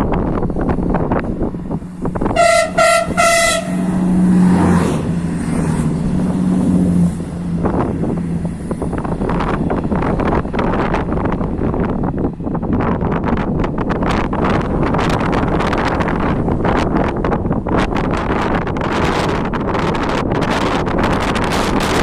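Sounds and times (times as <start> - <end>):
passing train hum: 0.0 - 22.0
wind buffeting microphone: 0.0 - 22.0
train horn toots: 2.2 - 4.8.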